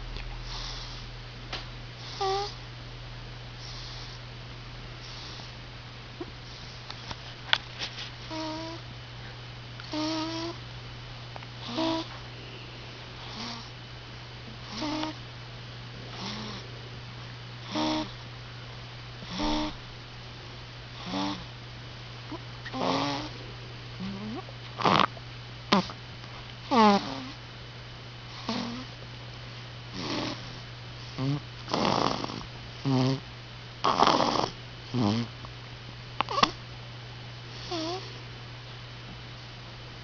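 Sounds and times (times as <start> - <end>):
steady low hum: 0.0 - 40.0
baby snoring: 0.4 - 1.0, 2.0 - 2.6, 3.6 - 4.2, 5.0 - 5.5, 8.2 - 8.8, 9.9 - 10.6, 11.6 - 12.2, 13.2 - 13.7, 14.6 - 15.2, 16.1 - 16.8, 17.6 - 18.2, 19.2 - 19.8, 21.0 - 21.5, 22.3 - 23.4, 24.0 - 26.0, 26.7 - 27.4, 28.4 - 28.9, 29.9 - 33.2, 33.8 - 35.3, 36.3 - 36.6, 37.6 - 38.2.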